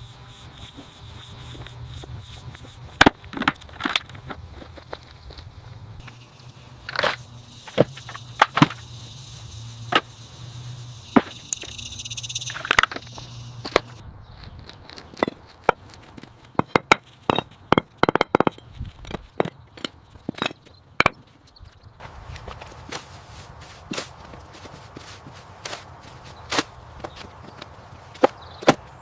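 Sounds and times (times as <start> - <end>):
low steady hum with hiss: 0.0 - 14.2.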